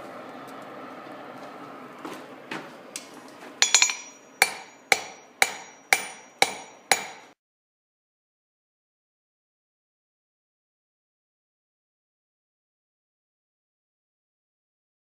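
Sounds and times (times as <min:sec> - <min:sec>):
hammer striking steel on anvil: 0:03.6 - 0:07.4.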